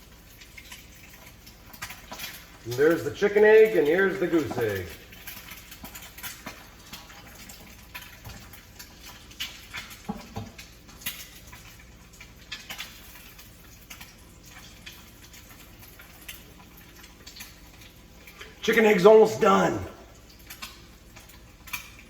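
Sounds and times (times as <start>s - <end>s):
eggs sizzling in butter: 0.0s - 22.0s
small crackles and pops: 0.0s - 22.0s.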